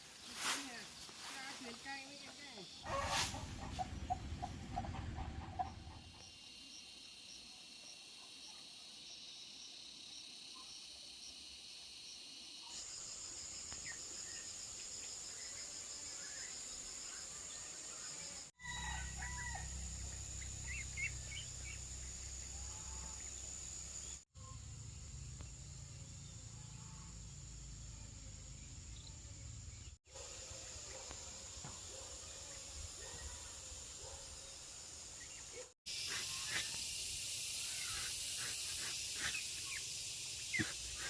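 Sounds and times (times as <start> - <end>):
high insect drone: 9.1 - 41.0
rooster crowing: 18.6 - 20.1
small birds chirping: 20.0 - 26.5, 35.2 - 41.0.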